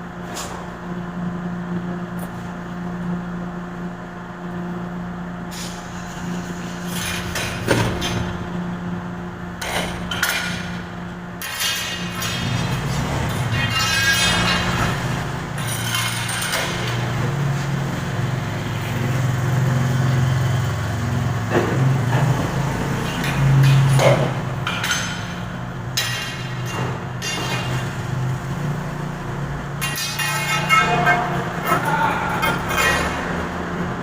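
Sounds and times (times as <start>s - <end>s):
low mechanical hum: 0.0s - 34.0s.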